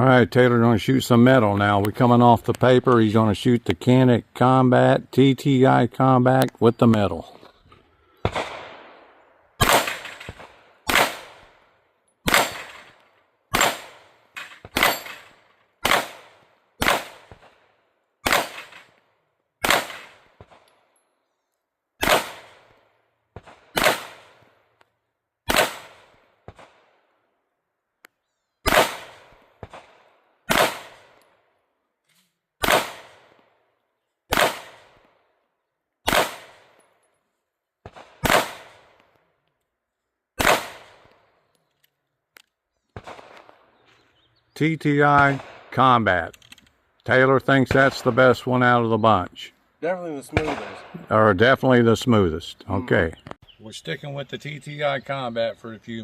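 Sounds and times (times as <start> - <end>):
pistol shots with echo: 8.2 - 19.0, 19.6 - 20.7, 22.0 - 24.6, 25.4 - 27.1, 28.6 - 31.4, 32.6 - 33.6, 34.3 - 35.2, 36.0 - 36.8, 37.8 - 39.1, 40.4 - 41.2, 43.0 - 43.8, 45.1 - 45.7, 50.3 - 51.1.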